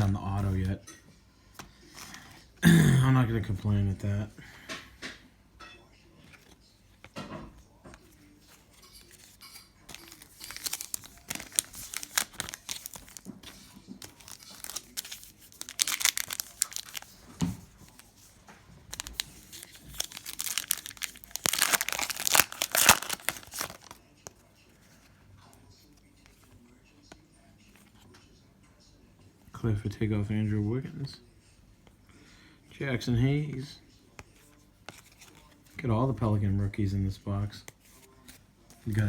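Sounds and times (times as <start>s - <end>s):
wrapper tearing and crinkling: 9.9s - 17.2s, 18.9s - 24.0s.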